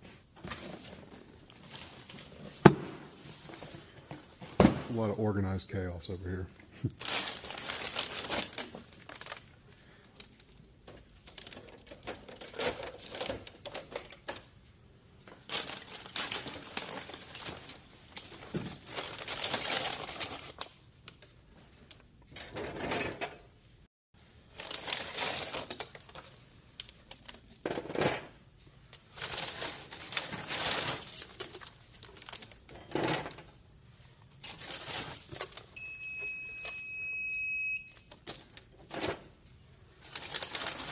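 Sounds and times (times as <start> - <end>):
wrapper crinkling: 7.0 - 14.4, 15.4 - 22.1, 24.4 - 27.6, 29.0 - 32.7, 34.3 - 35.8, 40.0 - 40.9.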